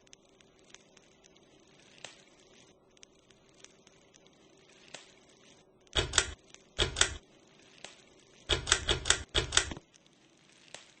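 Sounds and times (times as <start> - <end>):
faint steady hum: 0.0 - 11.0
rapid mechanical clicking: 5.9 - 7.2, 8.5 - 9.8.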